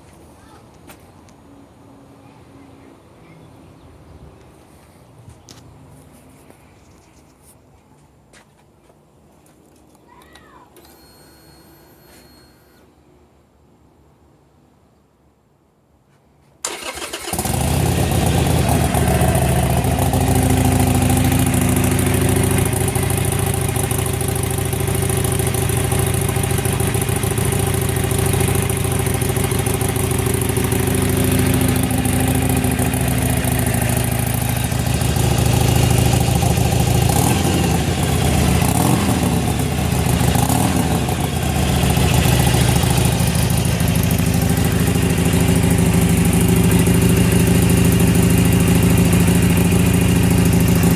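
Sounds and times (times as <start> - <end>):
motorcycle engine idling: 16.7 - 50.9.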